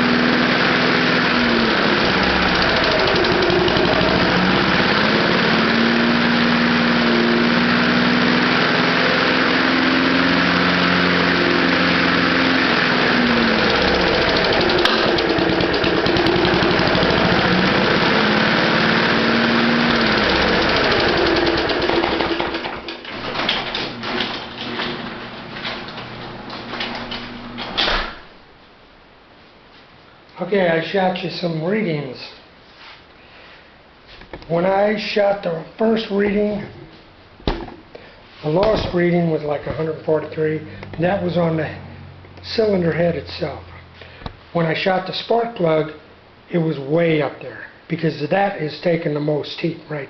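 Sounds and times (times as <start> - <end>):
lawnmower engine running: 0.0 - 27.7.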